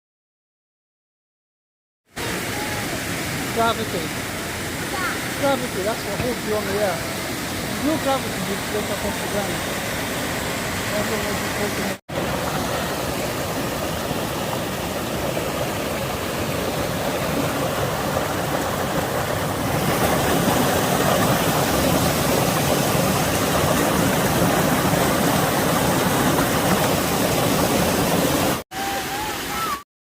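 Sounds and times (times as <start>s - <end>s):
rushing falling water: 2.1s - 29.8s.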